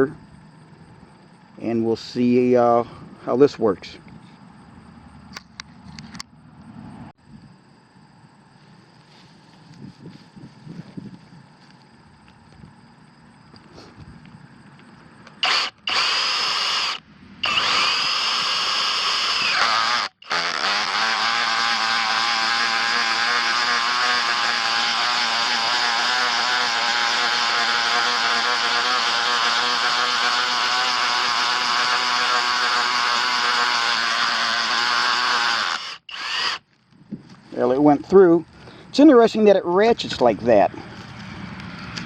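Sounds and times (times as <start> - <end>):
rotary hammer drilling: 15.3 - 36.7.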